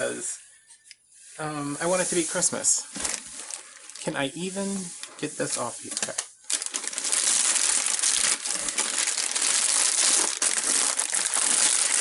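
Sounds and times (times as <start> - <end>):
packaging crinkling and rustling: 2.9 - 12.0.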